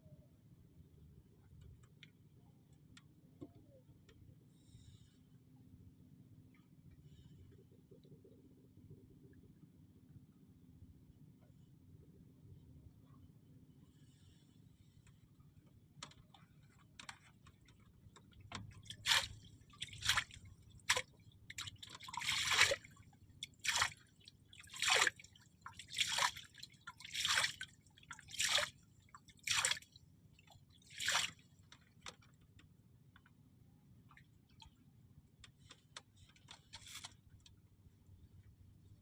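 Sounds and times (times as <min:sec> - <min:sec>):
short sharp water splashes: 0:18.8 - 0:29.9, 0:30.8 - 0:31.4.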